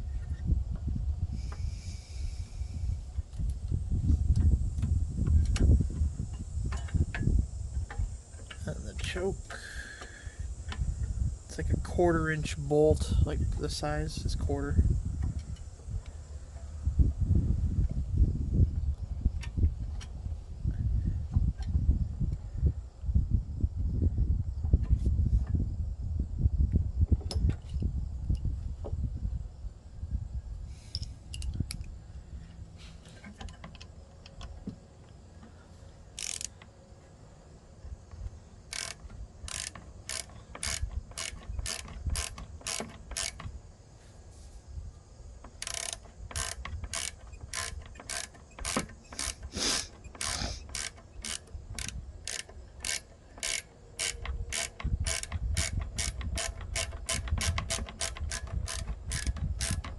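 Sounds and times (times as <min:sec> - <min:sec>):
ratchet wrench clicking: 0:30.9 - 0:31.9, 0:36.2 - 0:36.7, 0:38.7 - 0:43.5, 0:45.5 - 0:59.9.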